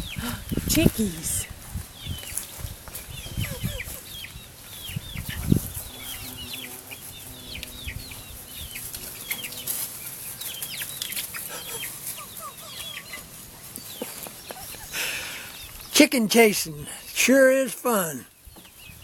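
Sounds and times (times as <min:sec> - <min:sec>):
chicks peeping: 0:01.3 - 0:15.9.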